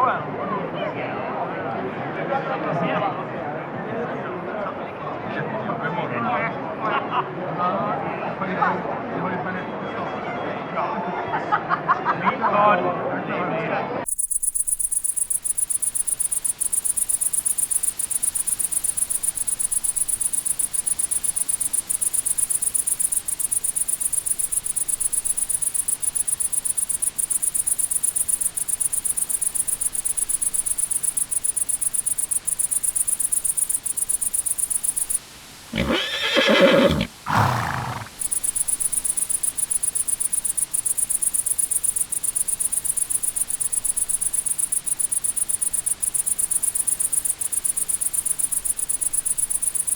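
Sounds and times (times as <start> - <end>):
crickets chirping: 14.1 - 49.9
horse whinnying: 35.7 - 38.2.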